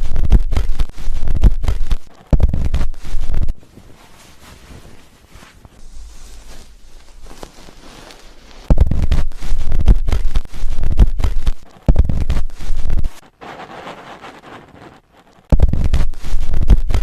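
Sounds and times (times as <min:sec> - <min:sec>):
hands scrubbing hair: 0:02.9 - 0:11.7.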